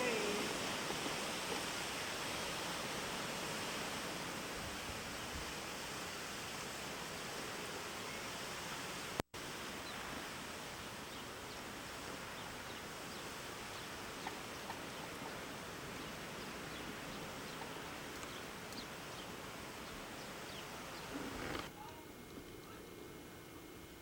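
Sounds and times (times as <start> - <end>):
faint ticks: 17.5 - 18.9.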